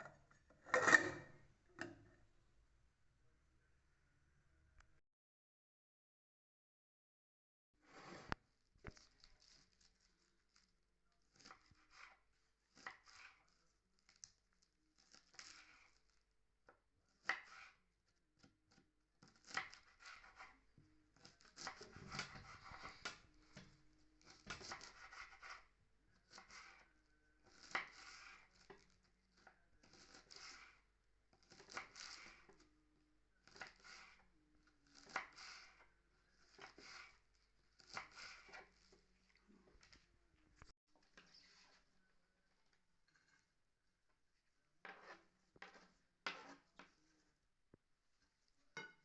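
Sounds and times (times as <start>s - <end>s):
faint food scraping strokes: 7.8s - 10.7s, 11.3s - 14.2s, 15.0s - 16.2s, 21.2s - 32.7s, 33.4s - 40.1s, 41.0s - 43.6s, 44.8s - 47.4s.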